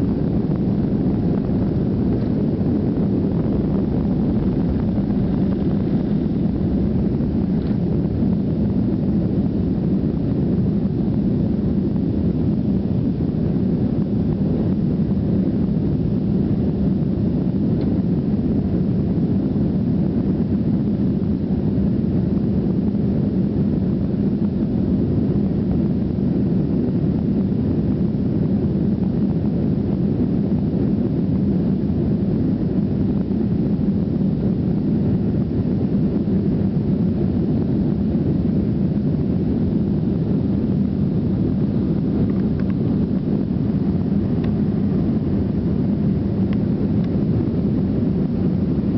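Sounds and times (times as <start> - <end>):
jet engines roaring on take-off: 0.0 - 19.0.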